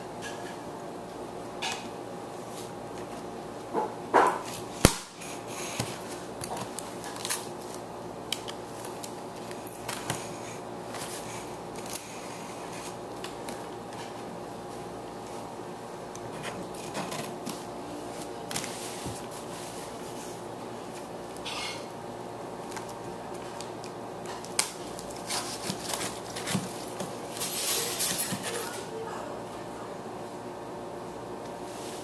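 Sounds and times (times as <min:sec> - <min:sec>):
background hum: 0:00.0 - 0:32.0
packaging clicks and rustles: 0:22.6 - 0:28.7.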